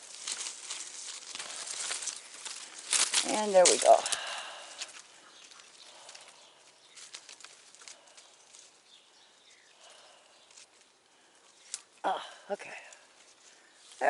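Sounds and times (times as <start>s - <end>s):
twigs snapping: 0.0s - 8.8s, 9.8s - 12.0s
footsteps through brush: 0.0s - 12.0s, 12.7s - 14.0s
rustling branches: 0.0s - 14.0s.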